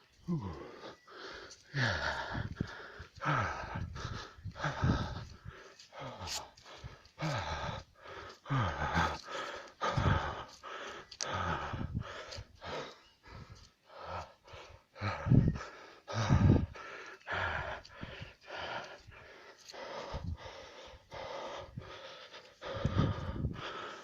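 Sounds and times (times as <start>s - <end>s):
heavy breathing with grunts: 0.2s - 24.0s.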